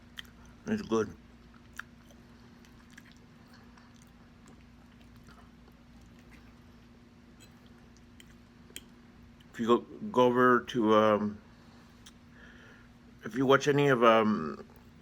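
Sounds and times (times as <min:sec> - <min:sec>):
chewing mouth clicks: 0:00.0 - 0:00.6, 0:01.4 - 0:09.6, 0:12.0 - 0:12.3
steady low hum: 0:00.0 - 0:15.0.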